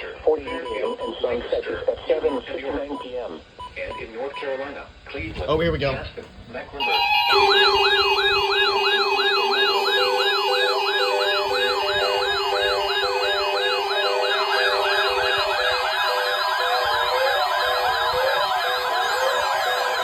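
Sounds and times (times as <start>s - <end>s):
steady low tone: 6.8s - 19.0s
electronic siren wailing: 6.8s - 20.0s.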